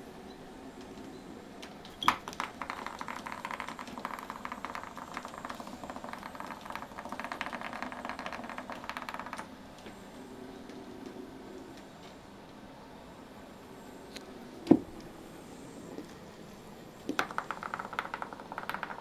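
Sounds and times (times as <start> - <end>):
cat toy rattling and clicking: 2.0 - 9.5, 17.1 - 19.0.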